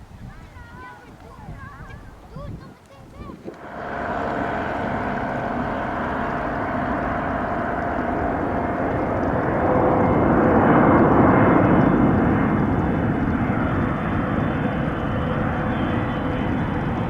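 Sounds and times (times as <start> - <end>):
airliner jet engines passing: 3.5 - 17.0.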